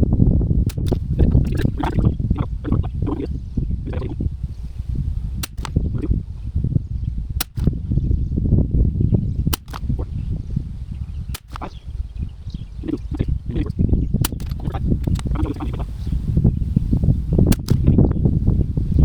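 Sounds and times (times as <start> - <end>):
wind rumble on microphone: 0.0 - 19.0
rifle shots cracking: 5.4 - 5.8, 7.4 - 7.9, 9.6 - 10.1, 11.3 - 11.8.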